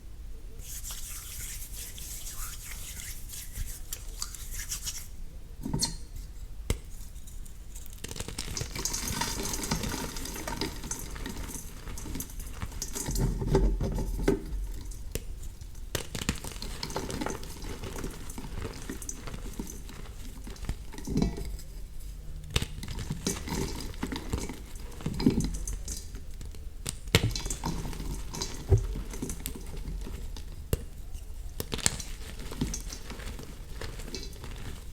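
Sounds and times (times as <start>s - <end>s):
chalk crunching and scraping: 0.6s - 5.2s
chalk pieces cracking: 0.6s - 5.2s.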